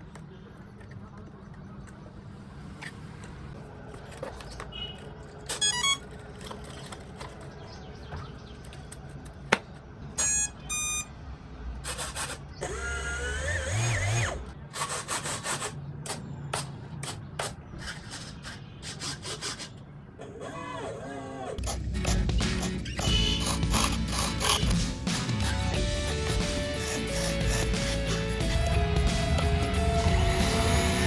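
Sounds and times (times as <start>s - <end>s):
short electronic beeps: 10.2s - 11.1s
small electric motor whining: 11.9s - 15.2s, 20.5s - 24.8s.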